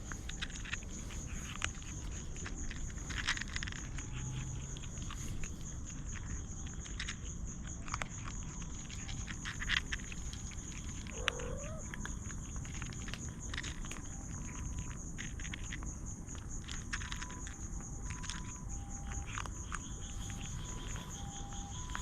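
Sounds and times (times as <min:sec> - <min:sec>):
light clicks and rustles: 0:00.0 - 0:22.0
steady high-pitched hum: 0:00.0 - 0:22.0
kitten mewing: 0:11.0 - 0:12.0.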